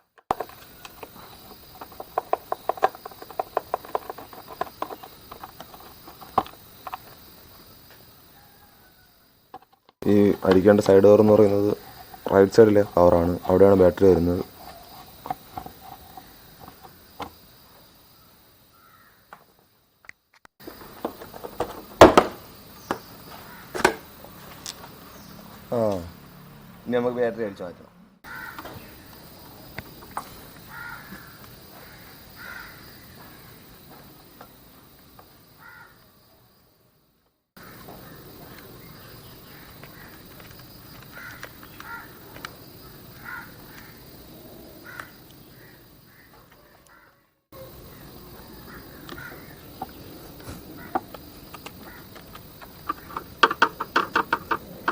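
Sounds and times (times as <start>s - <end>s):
outdoor background noise: 0.0s - 54.9s
crows cawing: 18.7s - 19.2s, 23.3s - 24.0s, 28.2s - 29.1s, 30.6s - 33.6s, 35.6s - 36.0s, 37.6s - 44.1s, 44.8s - 53.2s
plastic cover clicks and knocks: 50.9s - 54.9s.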